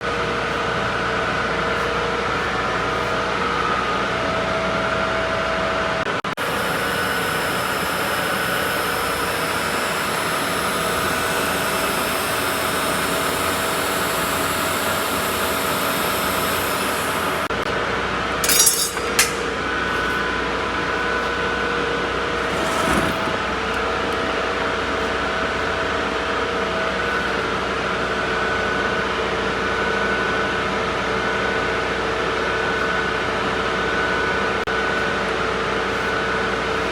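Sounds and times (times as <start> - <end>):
welding hiss: 6.4 - 22.7
welding machine hum: 6.4 - 27.6
sharp metallic clinks: 18.4 - 19.6.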